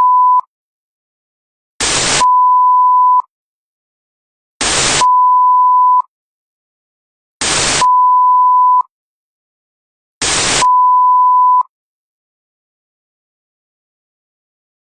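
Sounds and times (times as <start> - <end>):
test-tone beep: 0.0 - 0.5
burst of static: 1.8 - 2.2, 4.6 - 5.0, 7.4 - 7.8, 10.2 - 10.6.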